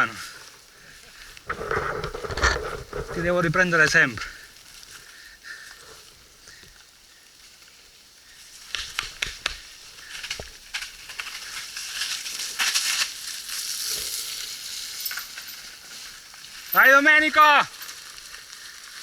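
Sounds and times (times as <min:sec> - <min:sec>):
bike tyres on muddy trail: 0:00.0 - 0:19.0
rain: 0:04.3 - 0:19.0.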